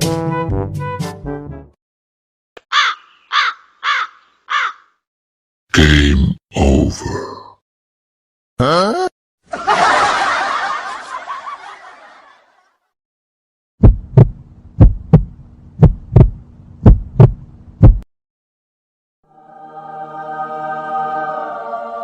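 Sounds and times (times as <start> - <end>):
heartbeat thumps: 13.8 - 18.1.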